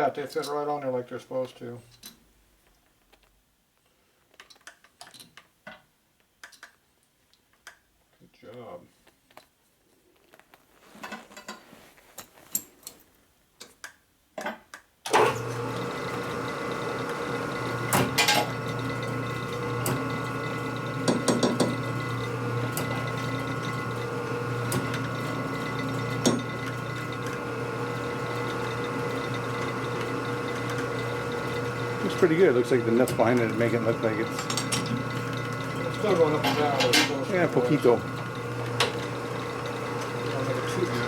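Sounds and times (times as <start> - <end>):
metal parts clicking: 4.3 - 5.5
electric motor humming: 15.2 - 41.0.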